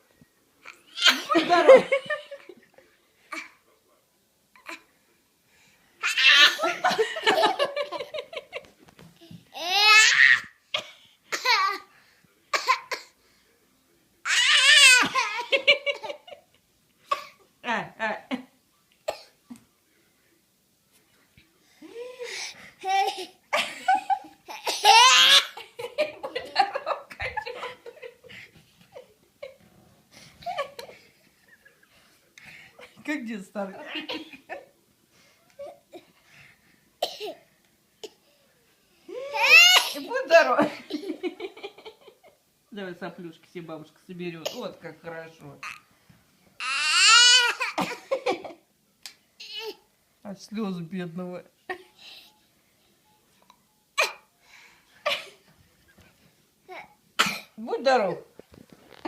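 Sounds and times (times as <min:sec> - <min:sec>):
laughter: 0:01.1 - 0:02.8, 0:06.5 - 0:08.8, 0:15.1 - 0:16.6, 0:23.0 - 0:24.6, 0:25.6 - 0:29.6, 0:30.4 - 0:32.1, 0:40.6 - 0:42.4, 0:47.7 - 0:48.7.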